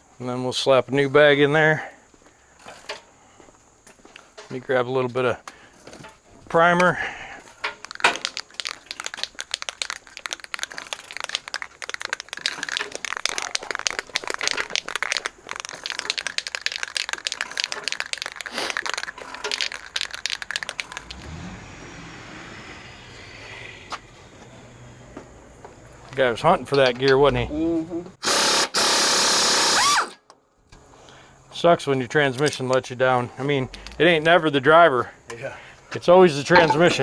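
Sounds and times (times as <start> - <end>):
aerosol can rattling: 7.7 - 21.2
truck engine revving: 20.6 - 27.6.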